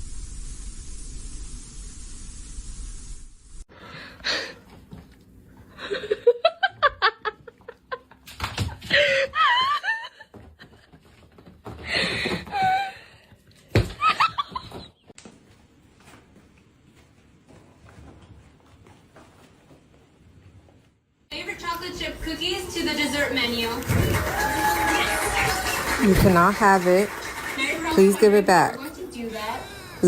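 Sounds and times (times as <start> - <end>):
steady hiss: 0.0 - 3.7.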